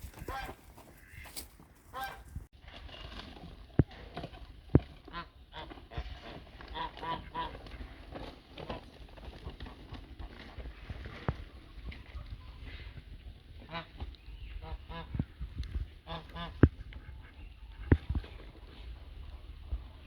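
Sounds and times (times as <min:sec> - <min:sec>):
farmyard birds honking: 0:00.0 - 0:02.4, 0:05.0 - 0:07.9, 0:13.6 - 0:15.2, 0:16.0 - 0:17.6.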